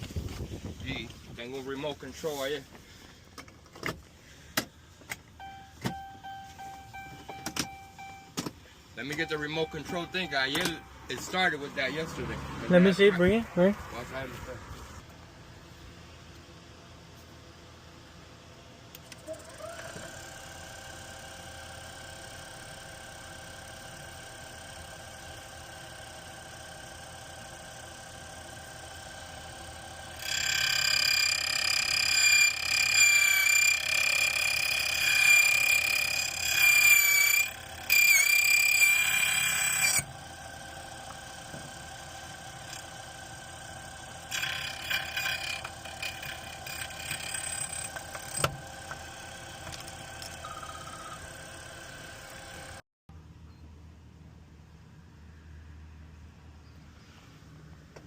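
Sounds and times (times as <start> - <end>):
key-cutting machine motor whine: 5.3 - 8.4, 9.0 - 14.3, 18.9 - 52.8
steady low hum: 20.3 - 57.0.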